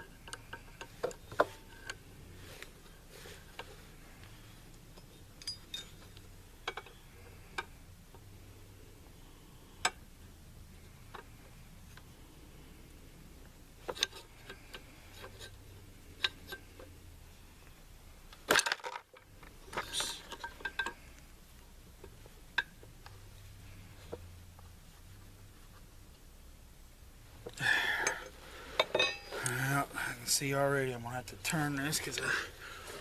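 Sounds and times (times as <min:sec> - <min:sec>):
metal tools and rifle parts clinking: 0:05.0 - 0:07.0, 0:27.9 - 0:30.1.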